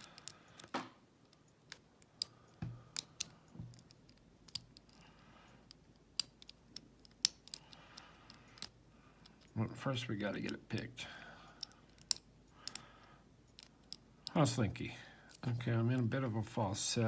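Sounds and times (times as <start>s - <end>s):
lock pick metallic clicks: 0.0s - 0.7s, 1.3s - 9.6s, 11.6s - 12.9s, 13.5s - 14.4s.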